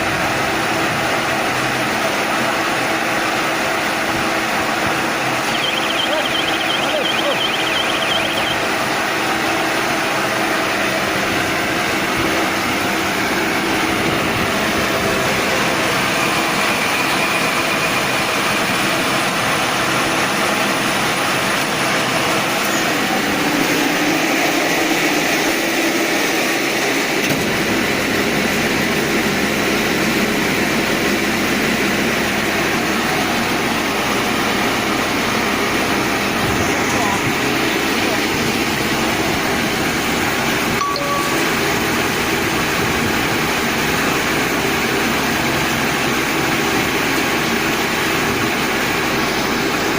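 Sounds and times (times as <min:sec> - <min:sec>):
baler machine mechanical din: 0:04.8 - 0:09.3.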